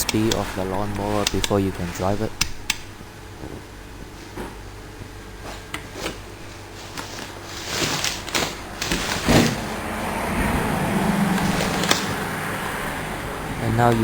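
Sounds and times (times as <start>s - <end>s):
remote switch clicks: 0.0s - 1.6s, 2.4s - 2.9s
electric motor hum: 0.0s - 14.0s.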